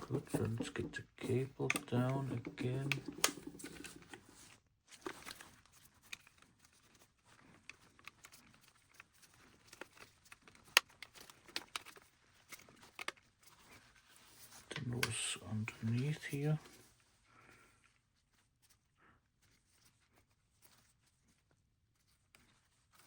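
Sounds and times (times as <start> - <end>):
plastic parts clicking: 0.0 - 6.5, 7.7 - 13.8.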